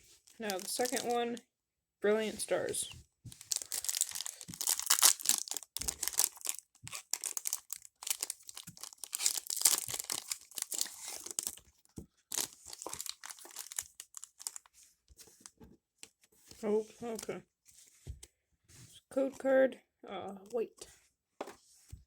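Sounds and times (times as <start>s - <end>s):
foil wrapper tearing and crinkling: 0.2s - 1.2s, 3.4s - 11.6s, 12.3s - 14.6s.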